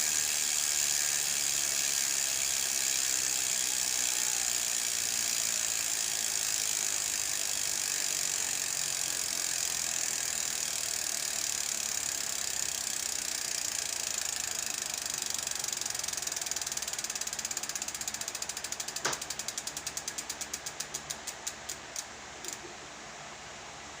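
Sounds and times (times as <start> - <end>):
bike hub ratchet buzzing: 0.0 - 22.6.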